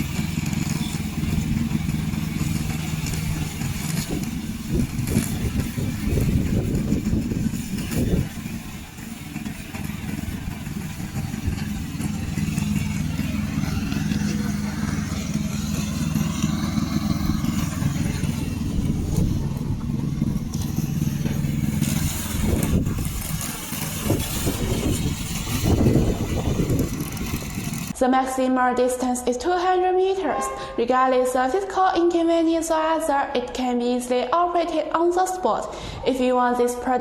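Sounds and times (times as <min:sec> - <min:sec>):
mower engine running: 0:00.0 - 0:28.0.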